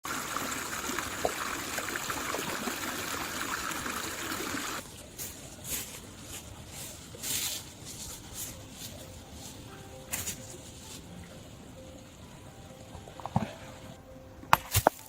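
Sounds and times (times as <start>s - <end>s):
water trickling: 0.0s - 4.9s
rustling: 4.8s - 11.4s.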